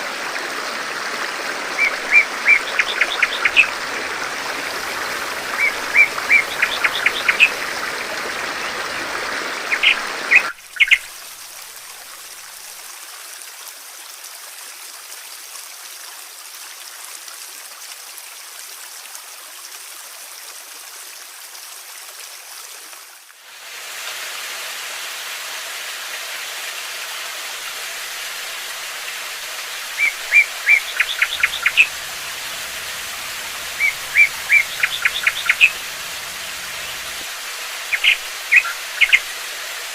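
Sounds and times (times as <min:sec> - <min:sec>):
running water: 0:00.0 - 0:39.9
small bird chirping: 0:01.8 - 0:03.8, 0:04.5 - 0:07.8, 0:09.7 - 0:11.0, 0:29.5 - 0:39.4.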